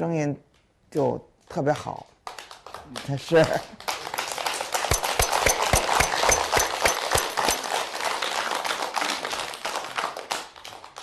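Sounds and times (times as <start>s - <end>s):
many hands clapping: 1.7s - 11.0s.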